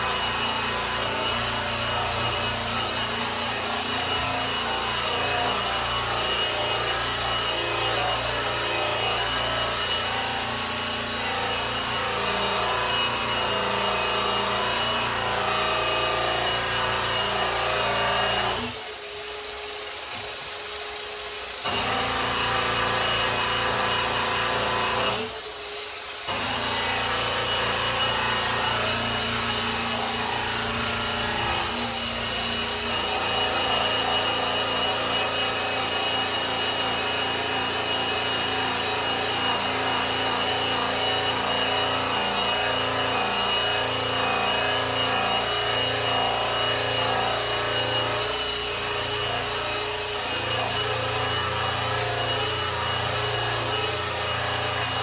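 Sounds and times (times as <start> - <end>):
electric polisher running: 0.0 - 19.0, 21.6 - 55.0.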